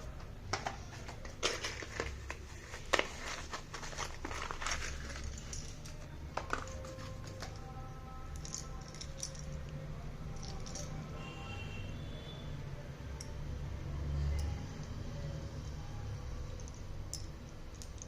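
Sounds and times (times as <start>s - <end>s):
soft background music: 0.0s - 18.0s
slate pencils clicking: 16.6s - 18.0s.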